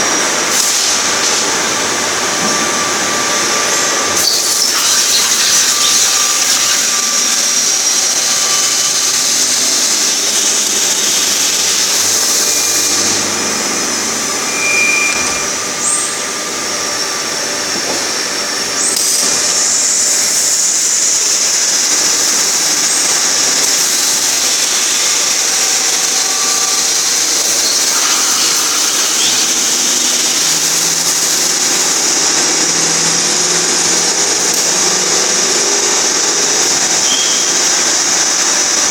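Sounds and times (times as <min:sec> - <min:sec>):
machines hissing and whining: 0:00.0 - 0:38.9
high beep: 0:14.4 - 0:15.6.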